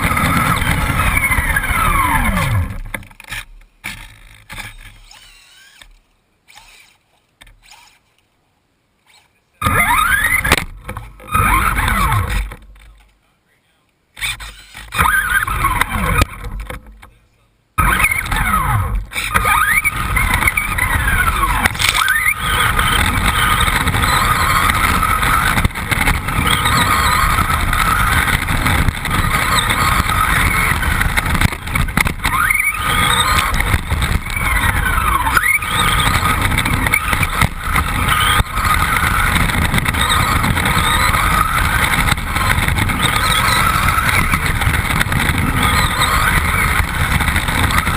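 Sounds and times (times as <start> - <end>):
electric motor whine: 0.0 - 3.1, 4.0 - 7.0, 9.1 - 12.6, 14.2 - 16.8, 17.8 - 47.9
rush of noise: 0.0 - 3.2, 17.8 - 47.9.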